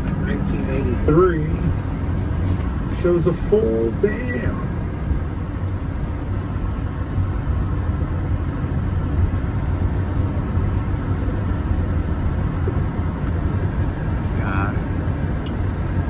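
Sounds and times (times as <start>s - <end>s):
bus engine rumble from inside: 0.0s - 16.0s.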